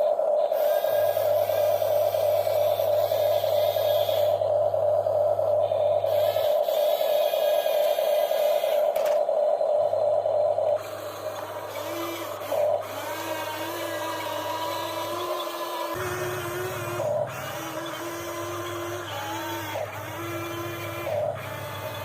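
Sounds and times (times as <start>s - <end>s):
small electric motors whining: 0.0s - 22.0s.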